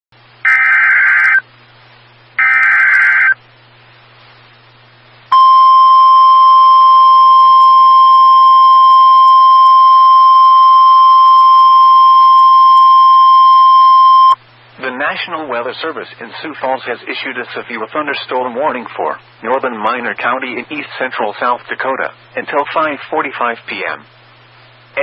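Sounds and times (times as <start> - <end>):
high warning alarm tone: 0.5 - 1.4, 2.4 - 3.4, 5.4 - 14.4
warbling digital header tones: 0.5 - 1.4, 2.4 - 3.4.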